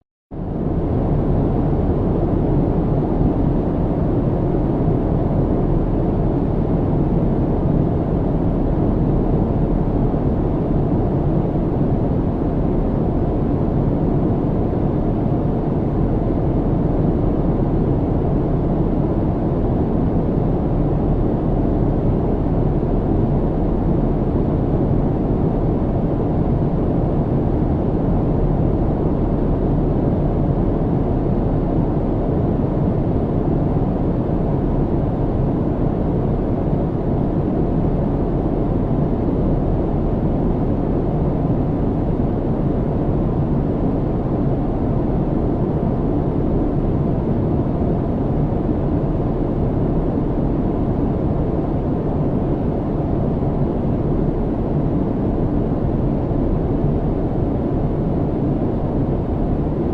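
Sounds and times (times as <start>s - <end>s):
airplane cabin engine drone: 0.4s - 59.9s.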